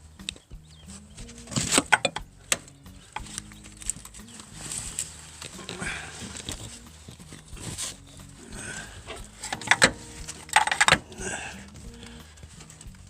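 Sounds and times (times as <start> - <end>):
metal tools clinking: 3.1 - 11.8.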